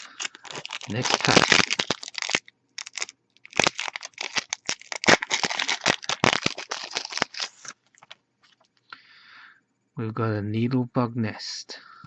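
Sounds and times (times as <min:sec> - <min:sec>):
foil wrapper tearing and crinkling: 0:00.0 - 0:08.2.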